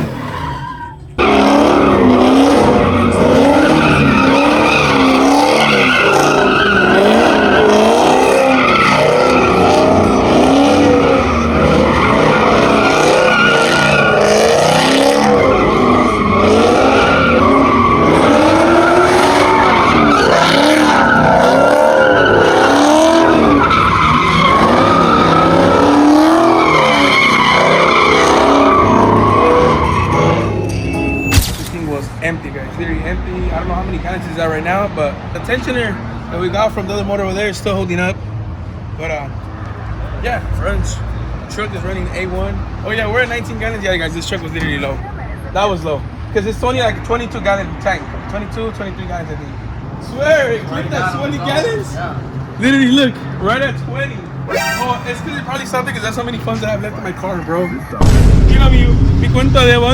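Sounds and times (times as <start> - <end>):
tires squealing: 0.0 - 38.2, 39.0 - 59.9
engine revving hard: 1.2 - 30.5, 58.0 - 59.9.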